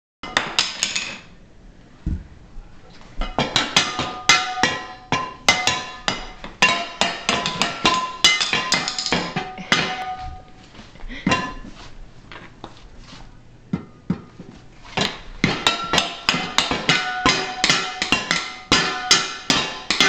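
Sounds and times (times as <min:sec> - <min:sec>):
dull thump: 0:02.0 - 0:02.3
kitchenware struck as percussion: 0:03.4 - 0:10.5, 0:15.4 - 0:20.0.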